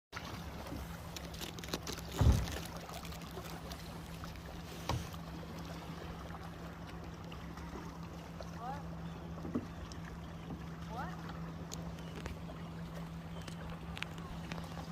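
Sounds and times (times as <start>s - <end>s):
paddle in water: 0.1s - 14.9s
low thump: 2.2s - 2.6s.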